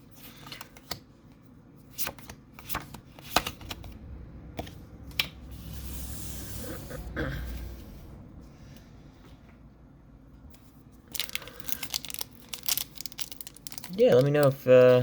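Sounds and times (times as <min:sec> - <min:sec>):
wrapper rustling: 0:11.1 - 0:15.0.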